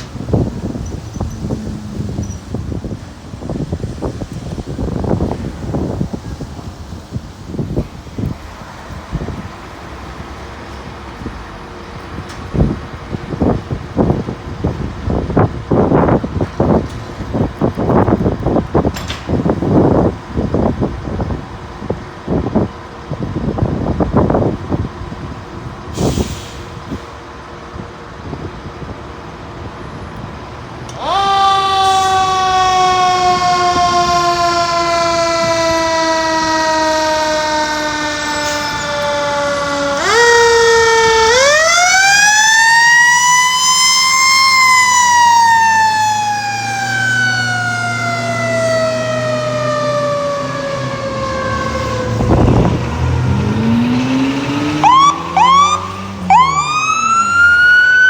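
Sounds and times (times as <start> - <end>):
fire truck siren wailing: 0.0 - 26.6, 29.8 - 58.0.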